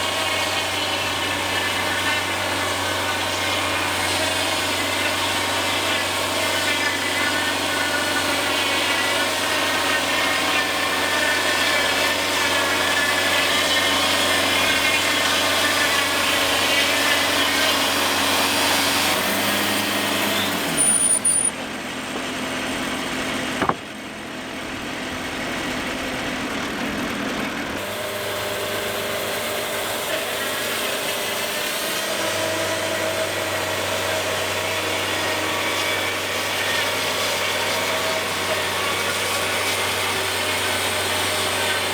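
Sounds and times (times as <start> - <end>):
sawmill engine running: 0.0 - 41.9
band blade cutting log: 0.1 - 21.6, 23.6 - 23.9.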